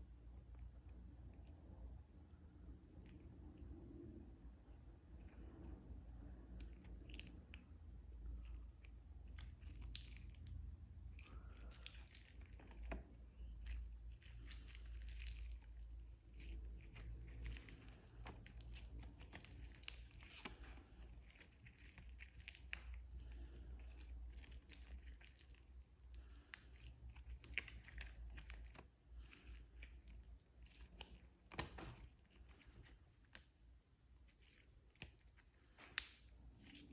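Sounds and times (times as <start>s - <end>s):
slime crackling and popping: 8.8s - 36.9s
slime snapping: 35.8s - 36.8s.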